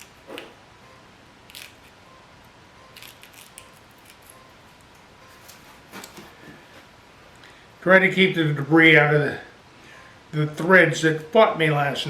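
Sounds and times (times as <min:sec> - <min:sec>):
crisp clicks and crackles: 0:01.5 - 0:02.0, 0:02.9 - 0:06.2.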